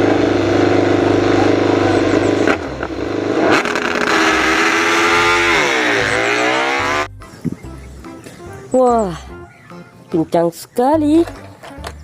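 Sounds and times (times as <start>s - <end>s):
motorcycle engine revving: 0.0s - 7.2s.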